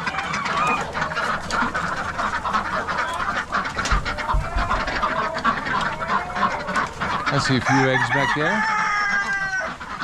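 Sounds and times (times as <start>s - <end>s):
chickens clucking: 0.0s - 10.0s
low thumps: 3.8s - 5.0s.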